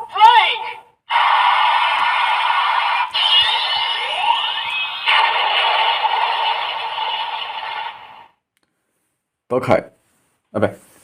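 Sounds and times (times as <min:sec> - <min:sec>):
toy speaker electronic effect: 0:01.1 - 0:08.3.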